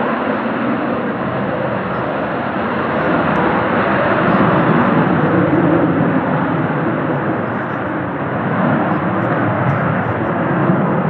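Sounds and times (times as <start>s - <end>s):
aircraft engine noise: 0.0s - 11.0s.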